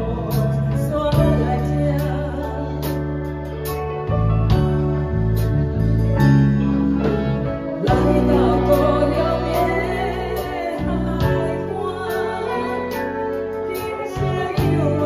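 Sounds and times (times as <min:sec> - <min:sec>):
song with guitar and bass: 0:00.0 - 0:15.0
person singing: 0:07.8 - 0:15.0.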